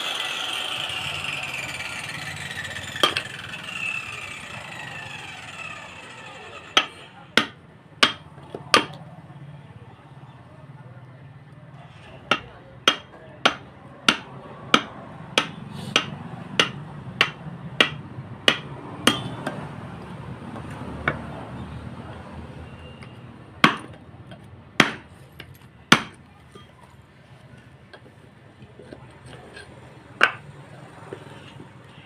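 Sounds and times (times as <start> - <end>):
hammer striking wood: 2.8 - 4.5, 5.8 - 9.0, 12.3 - 19.6, 23.6 - 25.1, 25.9 - 26.2, 30.2 - 30.5.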